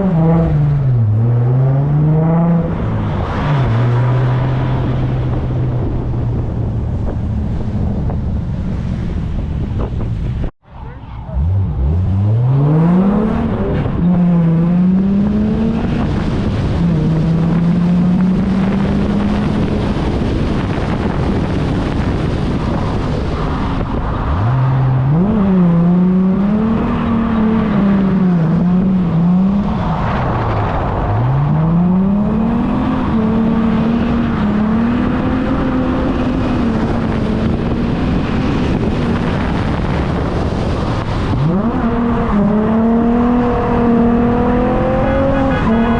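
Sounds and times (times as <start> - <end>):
car engine revving hard: 11.4 - 22.5, 30.9 - 45.9.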